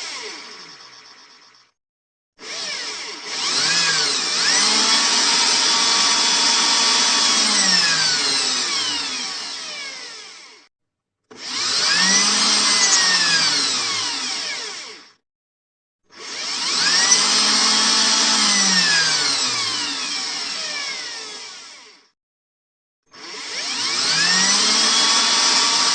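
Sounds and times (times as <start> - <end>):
electric drill motor whining: 0.0 - 1.8, 2.4 - 10.7, 11.3 - 15.2, 16.1 - 22.1, 23.1 - 25.9.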